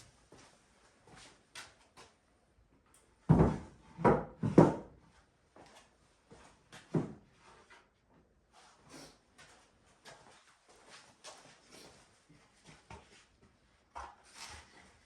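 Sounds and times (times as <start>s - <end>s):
wooden knocks and thuds: 3.3s - 4.9s.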